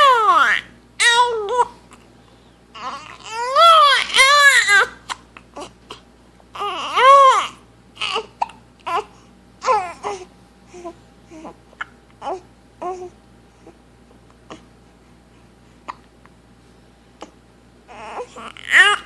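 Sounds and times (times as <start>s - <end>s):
baby crying: 0.0s - 1.8s, 2.8s - 5.7s, 6.6s - 8.3s, 17.9s - 19.0s
baby hiccupping yelps: 0.0s - 1.8s, 2.8s - 5.7s, 6.6s - 10.3s, 17.9s - 19.0s.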